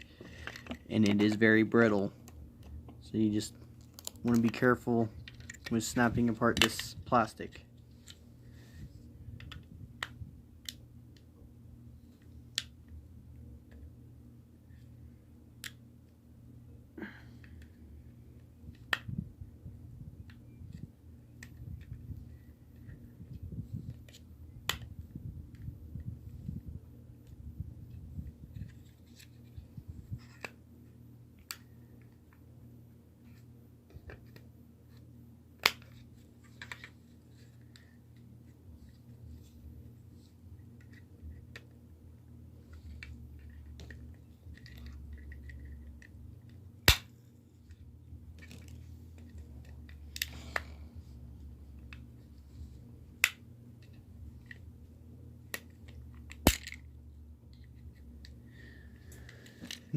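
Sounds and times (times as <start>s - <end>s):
low steady hum: 0.0s - 59.9s
brittle plastic clicking and snapping: 3.8s - 4.6s.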